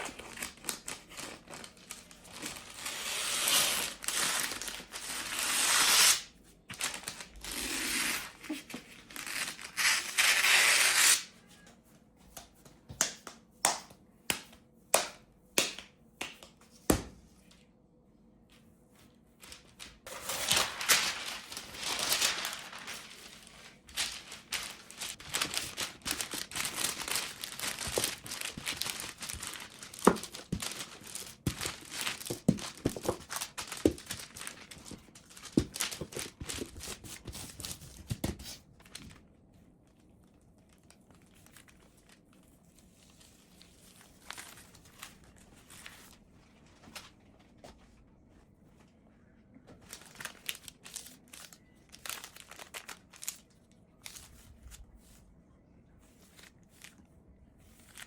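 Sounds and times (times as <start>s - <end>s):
crinkling and tearing: 19.4s - 37.0s.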